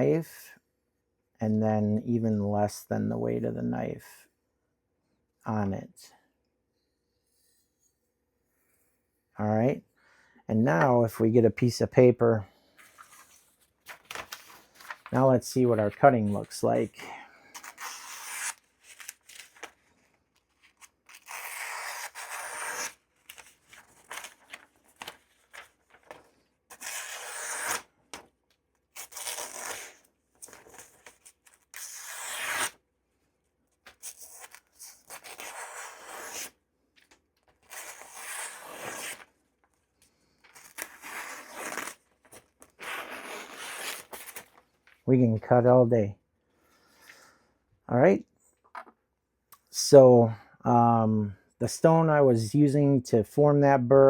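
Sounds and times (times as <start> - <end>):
knife slicing newspaper: 17.6 - 19.6, 20.8 - 24.4, 26.7 - 27.8, 31.7 - 32.8, 37.7 - 39.3, 40.6 - 42.0.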